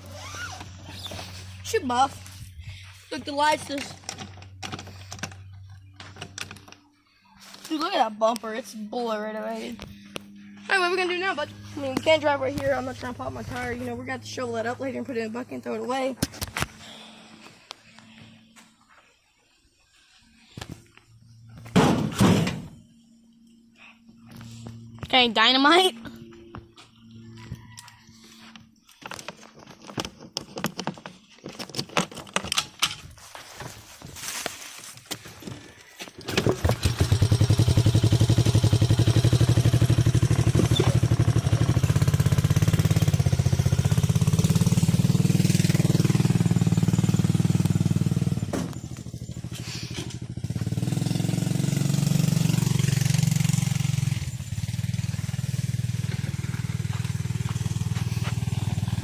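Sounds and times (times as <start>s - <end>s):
four-wheeler engine running: 0.0s - 18.5s, 35.4s - 59.0s.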